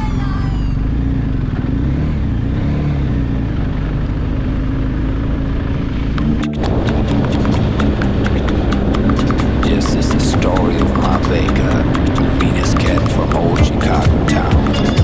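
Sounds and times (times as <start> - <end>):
motorcycle engine cruising: 0.0 - 15.0
wind rushing noise: 6.0 - 14.7.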